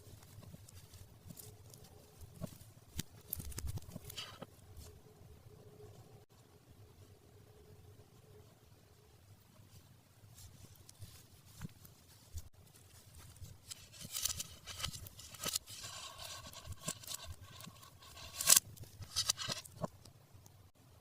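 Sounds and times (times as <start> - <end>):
plastic packaging crinkling: 12.7 - 19.9.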